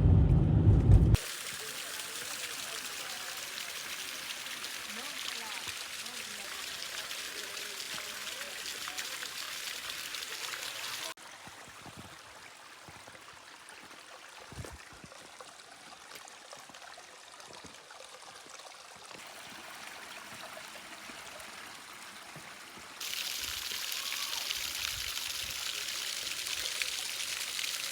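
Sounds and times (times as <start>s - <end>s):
low thump: 0.0s - 1.2s.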